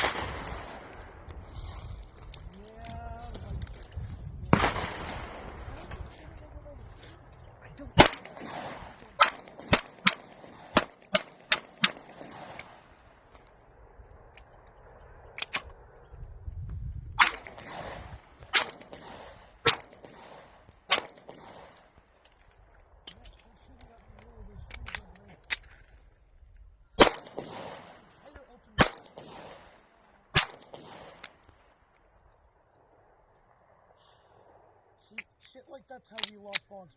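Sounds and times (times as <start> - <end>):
gunshots: 0.0 - 1.2, 4.5 - 6.2, 7.8 - 13.0, 17.2 - 21.9, 27.0 - 31.5.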